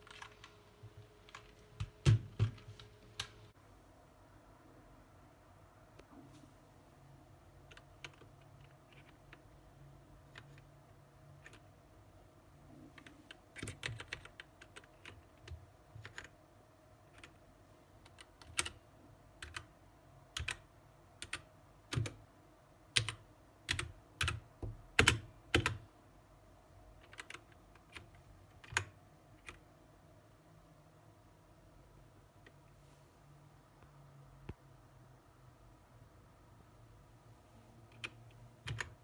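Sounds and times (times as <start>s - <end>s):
mechanical keyboard keys clacking: 0.0s - 0.5s, 7.7s - 9.4s, 12.9s - 16.4s, 18.0s - 18.8s, 19.4s - 19.7s, 20.4s - 22.2s, 23.0s - 25.8s, 27.0s - 29.6s, 37.9s - 39.0s.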